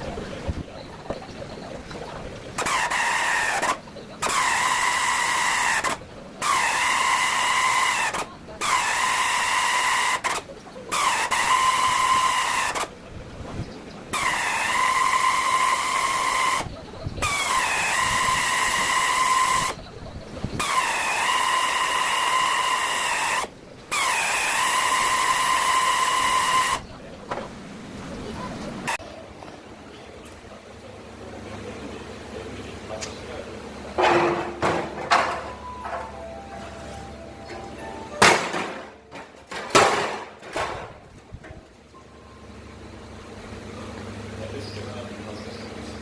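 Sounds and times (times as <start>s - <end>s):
pneumatic air tool whining: 2.6s - 12.9s, 14.1s - 19.8s, 20.6s - 26.8s.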